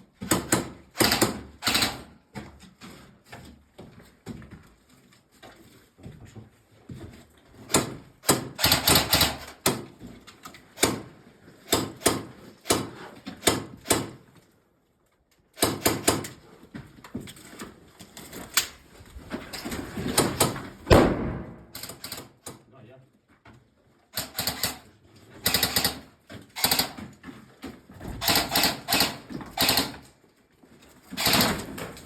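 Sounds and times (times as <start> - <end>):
airsoft guns firing: 0.2 - 2.1, 7.7 - 9.8, 10.8 - 11.1, 11.7 - 14.2, 15.6 - 16.3, 20.2 - 22.4, 24.2 - 24.8, 25.4 - 27.0, 28.2 - 30.0, 31.2 - 32.0.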